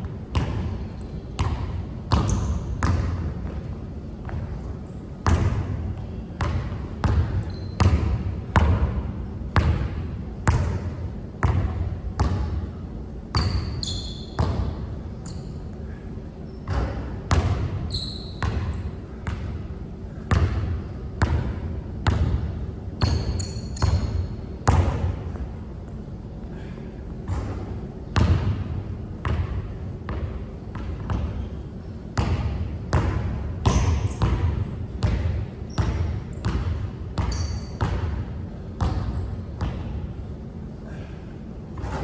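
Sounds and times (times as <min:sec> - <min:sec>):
basketball bouncing on court: 0:00.0 - 0:12.7, 0:13.3 - 0:15.5, 0:16.6 - 0:25.4, 0:27.3 - 0:31.5, 0:32.1 - 0:40.0
sneaker squeaks: 0:00.3 - 0:03.6, 0:06.4 - 0:08.3, 0:13.3 - 0:19.0, 0:23.0 - 0:25.4, 0:30.8 - 0:38.2.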